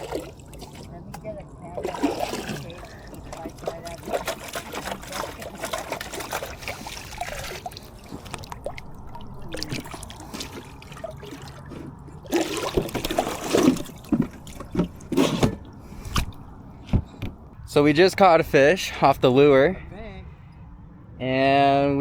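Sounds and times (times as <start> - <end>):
water splashing and trickling: 0.0 - 17.5.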